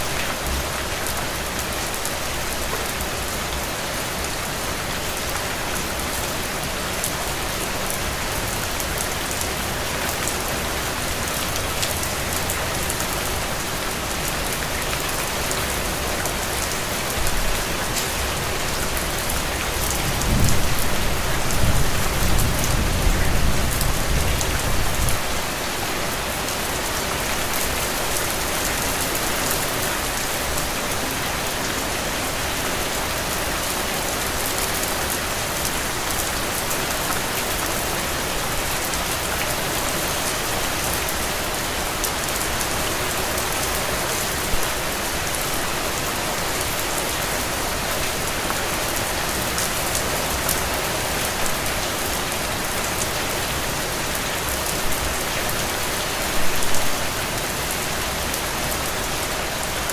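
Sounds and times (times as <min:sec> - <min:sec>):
heavy rain on soil and puddles: 0:00.0 - 0:59.9.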